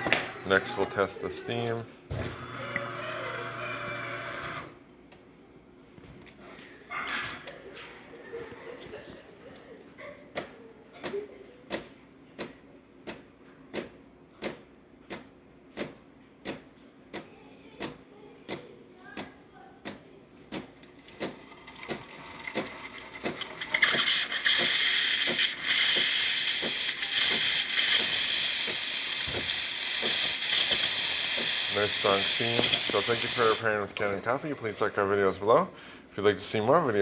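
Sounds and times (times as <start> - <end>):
espresso machine ticking: 21.9 - 33.6
steam wand hissing: 23.7 - 33.7.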